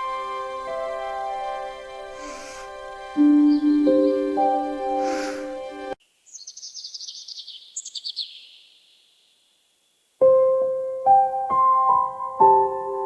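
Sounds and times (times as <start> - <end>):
slow piano notes: 0.0 - 6.0, 10.2 - 13.0
bird twittering: 2.2 - 5.4, 6.3 - 9.2.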